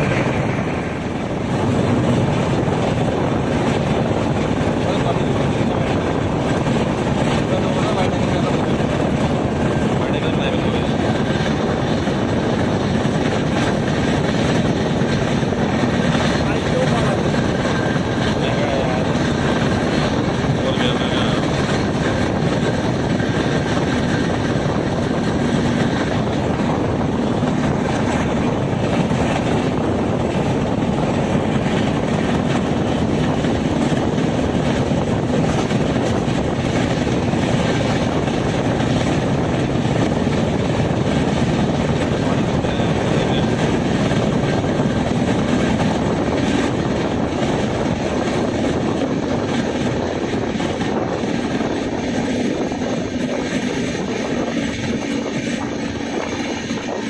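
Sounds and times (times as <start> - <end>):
passenger train running: 0.0 - 57.0.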